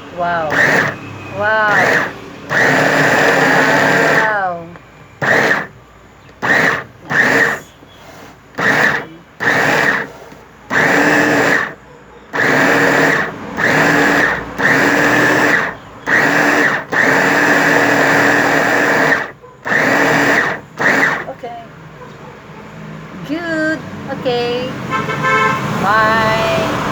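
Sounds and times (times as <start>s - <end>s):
electric meat grinder whirring: 0.2s - 4.6s, 5.2s - 21.4s.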